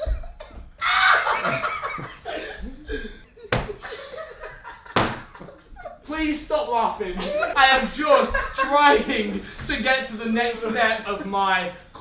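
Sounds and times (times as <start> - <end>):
people laughing: 0.0 - 6.1, 7.0 - 9.8
sharp knock: 3.5 - 3.8, 5.0 - 5.3.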